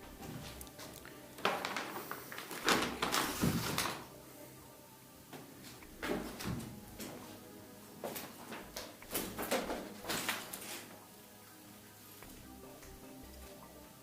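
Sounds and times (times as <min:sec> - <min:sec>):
irregular knocks and clatters: 0:05.7 - 0:07.2, 0:08.1 - 0:10.6.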